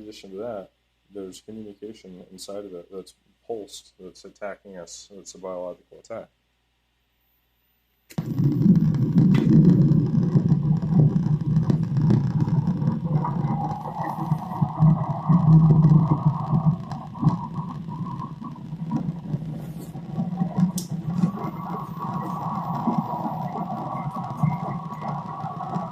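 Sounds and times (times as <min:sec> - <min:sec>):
high drone: 0:08.2 - 0:25.9
low fluctuating rumble: 0:08.2 - 0:25.9.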